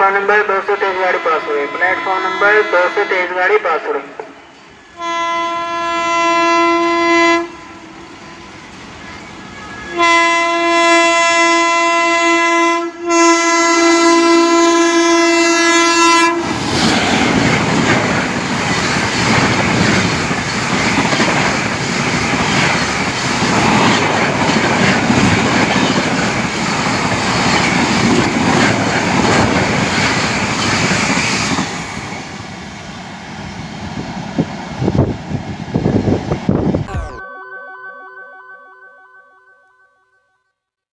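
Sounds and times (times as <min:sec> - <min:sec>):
train horn blasts: 0:00.0 - 0:08.8, 0:09.5 - 0:16.5
train wheels rushing on rails: 0:04.2 - 0:10.7, 0:14.5 - 0:36.8.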